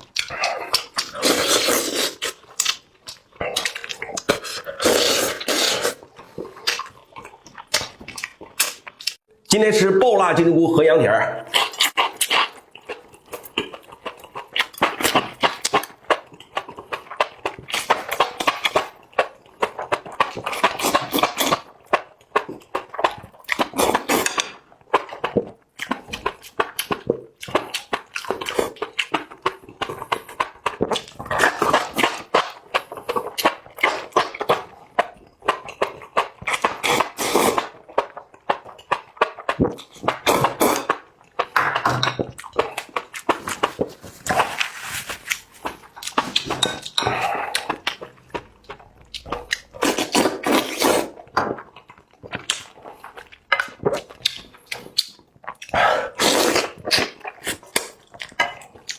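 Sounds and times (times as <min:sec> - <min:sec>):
wet chewing and lip-smacking: 0:00.0 - 0:09.2, 0:11.5 - 0:58.9.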